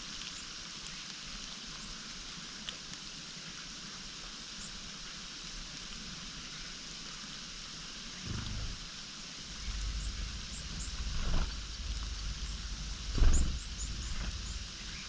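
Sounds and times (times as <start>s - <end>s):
outdoor hiss: 0.0s - 15.0s
low rumbling: 8.2s - 15.0s.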